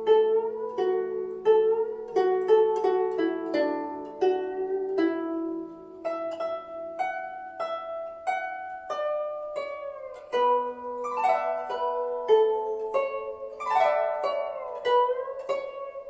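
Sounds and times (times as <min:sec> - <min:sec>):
plucked zither notes: 0:00.0 - 0:16.0.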